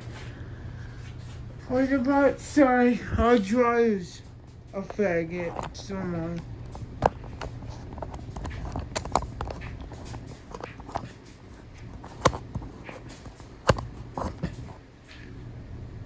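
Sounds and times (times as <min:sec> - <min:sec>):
steady low hum: 0:00.0 - 0:16.0
sharp knocks and clicks: 0:04.3 - 0:14.8.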